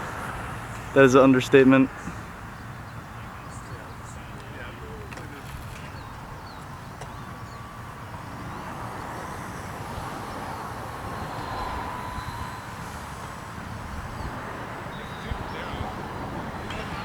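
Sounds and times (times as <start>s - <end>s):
wind rumbling on microphone: 1.9s - 17.0s
rc plane motor whining: 5.0s - 17.0s.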